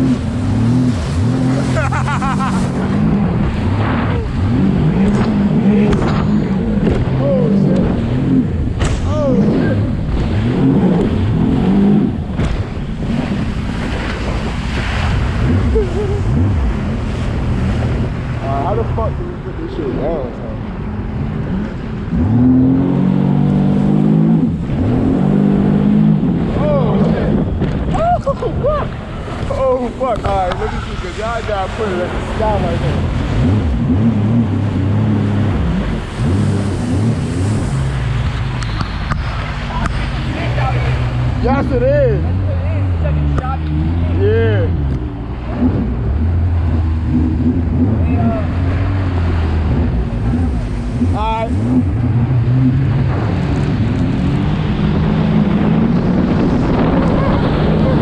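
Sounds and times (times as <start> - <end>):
jet ski engine running: 0.0 - 58.0
water splashing: 0.0 - 58.0
wind buffeting microphone: 24.4 - 58.0.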